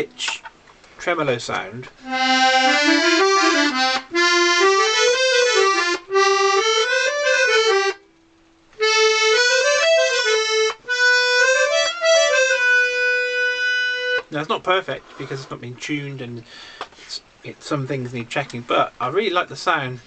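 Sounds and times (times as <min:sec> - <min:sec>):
piano accordion playing a tune: 0:02.0 - 0:08.0, 0:08.8 - 0:14.4.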